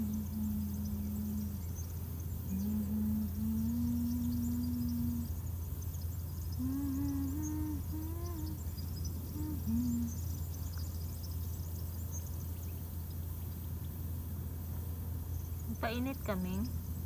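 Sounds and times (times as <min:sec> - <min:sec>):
person humming a slow tune: 0:00.0 - 0:05.5, 0:06.5 - 0:10.4
low steady drone: 0:00.0 - 0:11.7.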